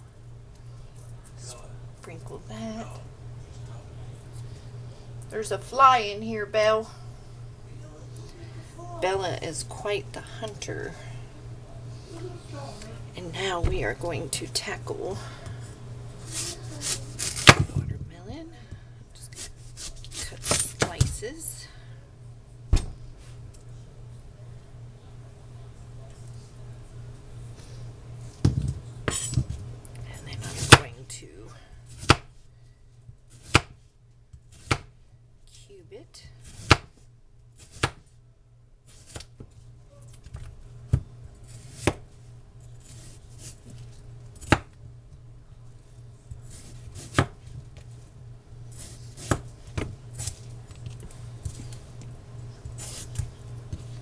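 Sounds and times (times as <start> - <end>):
knife scraping through watermelon: 16.1 - 17.5, 19.3 - 20.7, 42.8 - 43.9, 46.4 - 47.2, 52.7 - 53.9.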